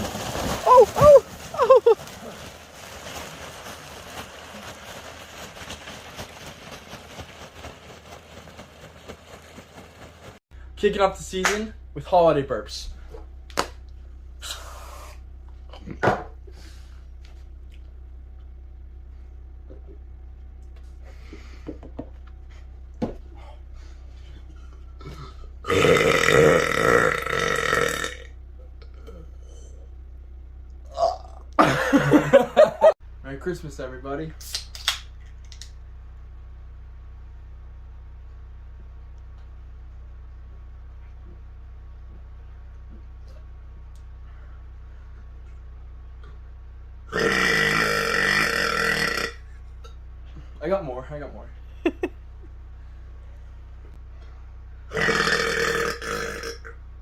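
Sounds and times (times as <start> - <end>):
low hum: 0.0 - 57.0
man burping loudly: 25.7 - 28.3, 30.9 - 31.6, 47.1 - 49.4, 54.9 - 56.8.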